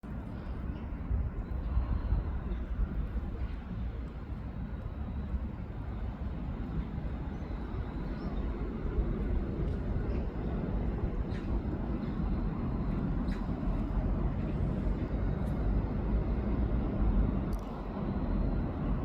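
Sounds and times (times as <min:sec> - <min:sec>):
faint clicks: 0:17.5 - 0:17.8.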